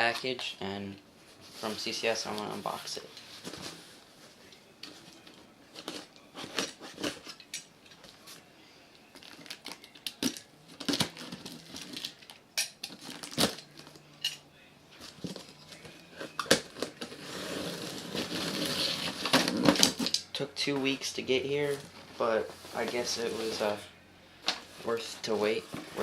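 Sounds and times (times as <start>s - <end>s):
cardboard rustling: 24.7s - 26.0s.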